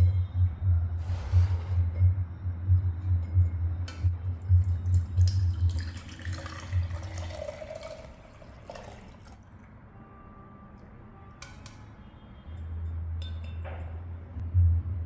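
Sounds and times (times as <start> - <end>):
low pulsing beat: 0.0 - 7.2, 14.4 - 15.0
liquid pouring and dripping: 3.9 - 9.7.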